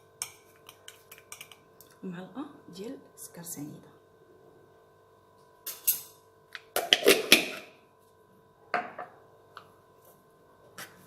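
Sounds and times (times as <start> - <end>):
faint steady hum: 0.0 - 11.0
spoon clinking on kitchenware: 0.2 - 1.6.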